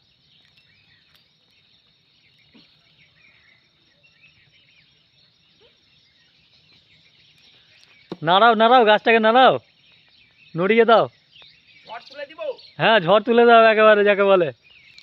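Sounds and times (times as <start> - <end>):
soft ticks and rustles: 0.3 - 2.0.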